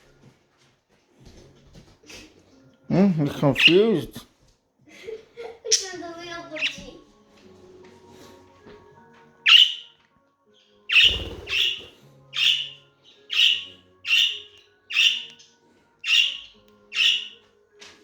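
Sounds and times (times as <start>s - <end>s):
budgerigar squawking: 3.6s - 3.9s, 6.6s - 6.8s, 9.5s - 9.9s, 10.9s - 15.4s, 16.0s - 17.4s.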